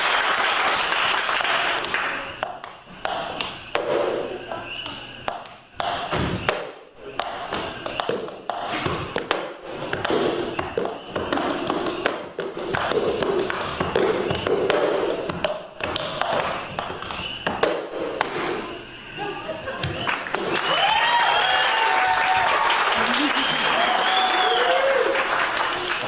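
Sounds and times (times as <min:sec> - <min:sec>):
indistinct voices: 0:22.4 - 0:26.0.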